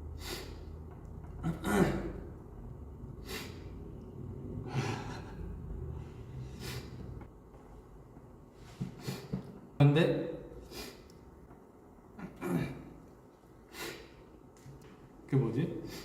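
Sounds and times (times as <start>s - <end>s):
short breaths or sniffs: 0.2s - 0.6s, 3.2s - 3.7s, 6.4s - 7.1s, 10.6s - 11.1s, 13.7s - 14.2s.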